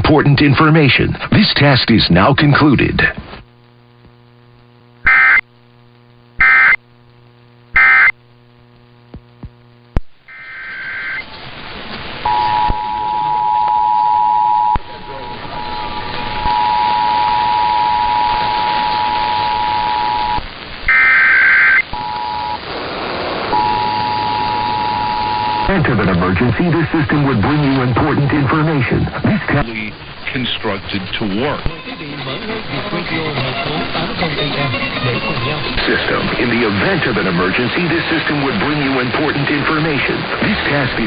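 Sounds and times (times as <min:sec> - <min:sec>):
radio hiss: 0:00.0 - 0:41.0
low hum: 0:03.0 - 0:37.3
screeching data bursts: 0:05.0 - 0:05.4, 0:06.4 - 0:06.8, 0:07.8 - 0:08.1, 0:10.3 - 0:11.3, 0:12.2 - 0:22.7, 0:23.5 - 0:26.4
two-tone attention signal: 0:05.1 - 0:05.4, 0:06.4 - 0:06.8, 0:07.8 - 0:08.1, 0:12.2 - 0:22.6, 0:23.5 - 0:25.7.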